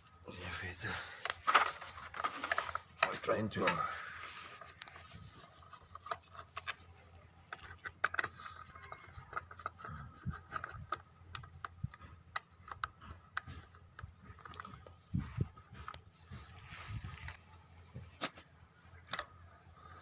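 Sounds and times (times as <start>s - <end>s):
hand tools clicking and rattling: 7.5s - 16.1s.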